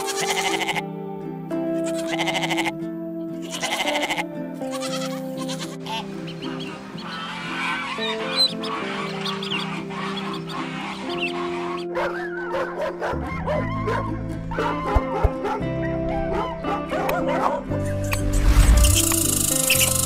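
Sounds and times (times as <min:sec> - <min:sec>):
farm animal bleating: 0:00.0 - 0:01.0, 0:01.8 - 0:11.7
background music with held notes: 0:00.0 - 0:20.0.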